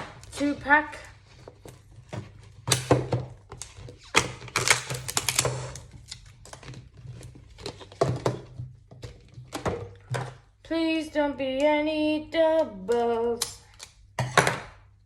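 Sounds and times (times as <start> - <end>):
plastic packaging being opened: 1.2 - 9.6.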